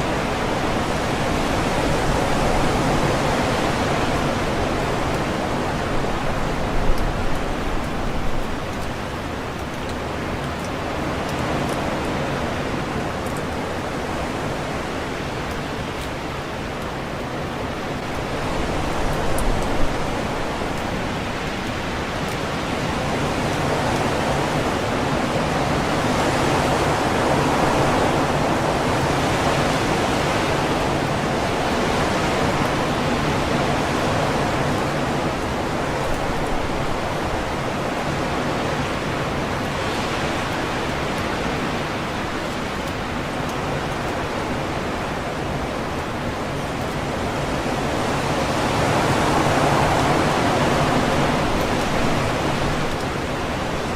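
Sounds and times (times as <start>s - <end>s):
strong wind rushing through trees: 0.0s - 53.9s.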